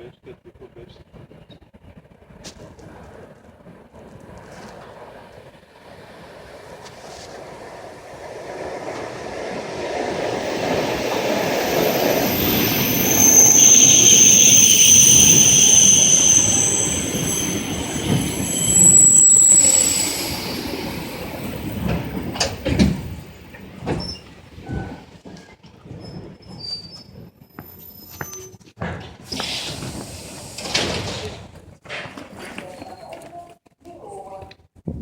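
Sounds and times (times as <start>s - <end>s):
train wheels rumbling: 0.2s - 27.9s
high-pitched brake squealing: 10.0s - 23.3s, 26.1s - 28.7s.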